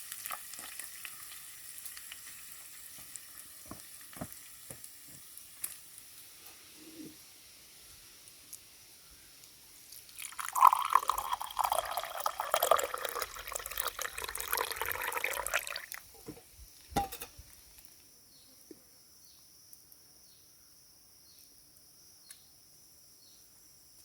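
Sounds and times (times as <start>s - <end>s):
water splashing and trickling: 9.8s - 17.5s.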